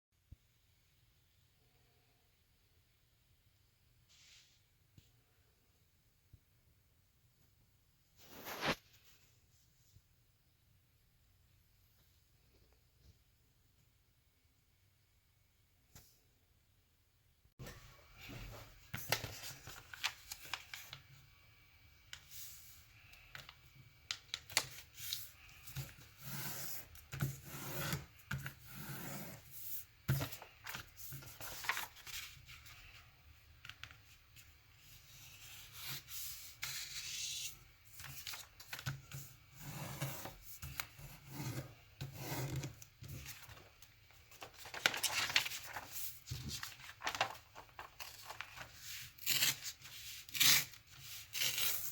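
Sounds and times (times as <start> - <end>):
paper rustling and sliding: 8.2 - 9.3, 17.7 - 21.1, 24.2 - 33.1, 33.7 - 51.9
paper creases crackling: 39.9 - 51.9.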